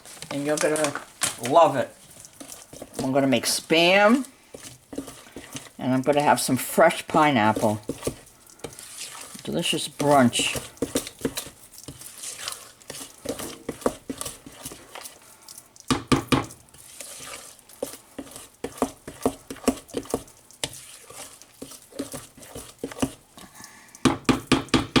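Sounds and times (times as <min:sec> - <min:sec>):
utensil stirring batter in bowl: 0:00.0 - 0:25.0.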